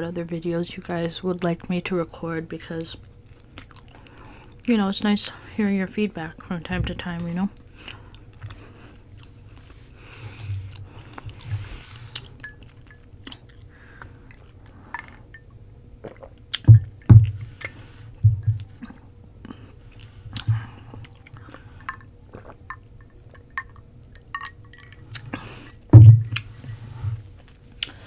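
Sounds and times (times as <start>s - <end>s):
low thumps: 6.6s - 7.3s, 16.6s - 17.6s, 18.2s - 18.7s, 25.9s - 27.2s
wet mouth clicks and smacks: 15.0s - 17.7s.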